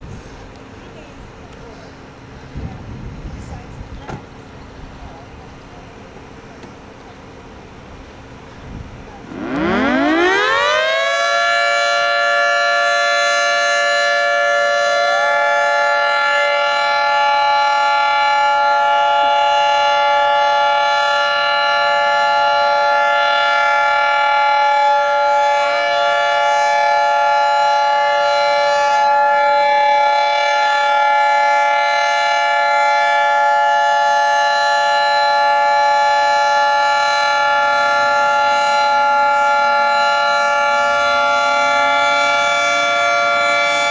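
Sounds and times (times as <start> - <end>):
two-tone warning siren: 9.2 - 43.9
fainter second siren winding up: 9.3 - 10.8.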